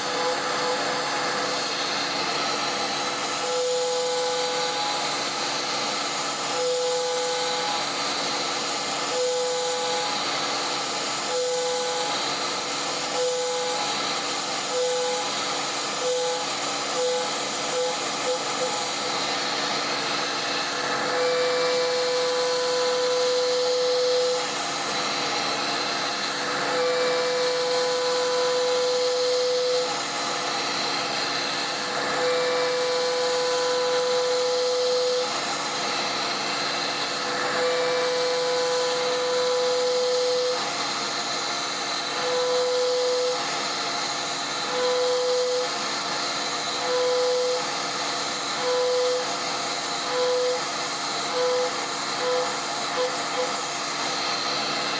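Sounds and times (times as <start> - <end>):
cnc router hiss: 0.0 - 54.9
humming cutting tone: 0.0 - 54.9.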